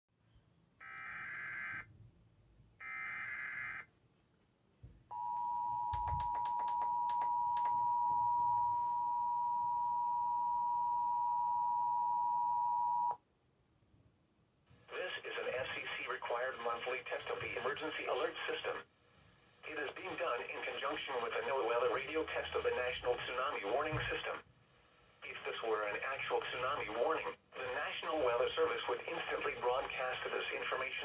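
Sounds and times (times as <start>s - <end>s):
clicks: 5.3s - 7.8s.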